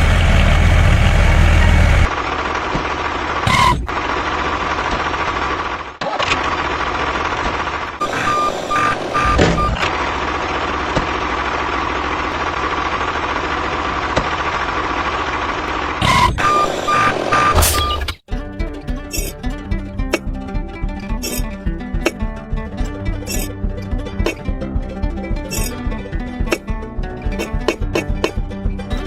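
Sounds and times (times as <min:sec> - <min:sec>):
construction vehicle engine running: 0:00.0 - 0:29.0
short reversing beeps: 0:08.0 - 0:09.8.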